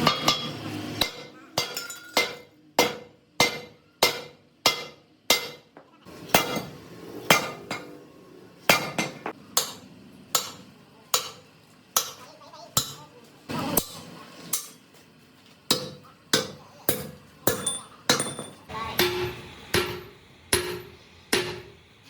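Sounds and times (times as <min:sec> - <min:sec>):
hammer striking metal: 0:00.0 - 0:05.7, 0:06.3 - 0:07.9, 0:08.7 - 0:12.2, 0:12.8 - 0:13.0, 0:15.7 - 0:21.8.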